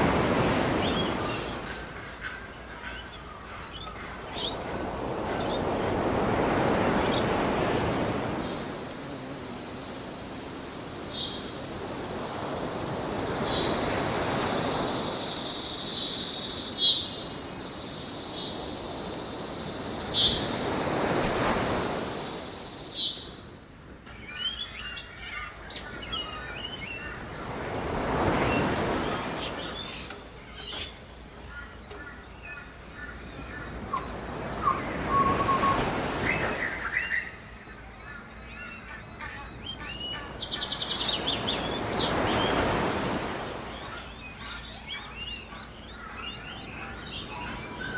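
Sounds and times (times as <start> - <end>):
waves washing onto beach: 0.0 - 2.1, 4.2 - 23.8, 27.2 - 30.1, 40.8 - 44.5
birds chirping: 0.2 - 23.8, 39.0 - 47.9
small birds twittering: 0.2 - 23.8, 31.5 - 47.9
high steady hiss: 6.2 - 23.8.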